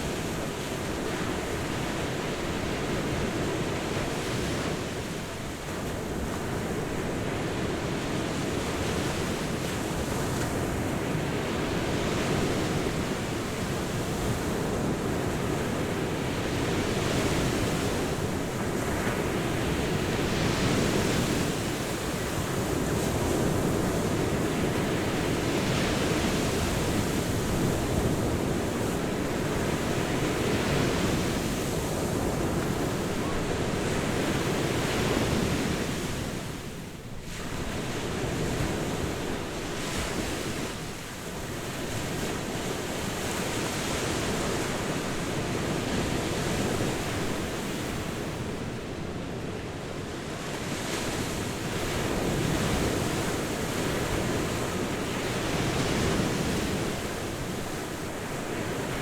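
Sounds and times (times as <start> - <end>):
ocean waves breaking on beach: 0.0 - 59.0.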